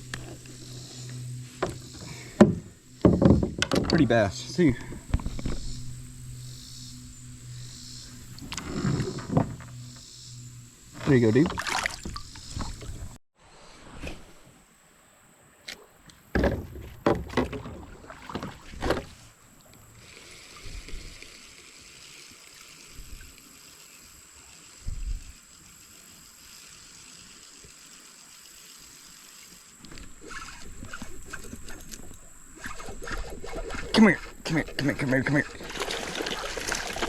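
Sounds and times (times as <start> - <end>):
steady low hiss: 0.0 - 17.0
knocks and thumps on kayak hull: 1.6 - 4.1, 8.6 - 9.7, 16.3 - 19.2.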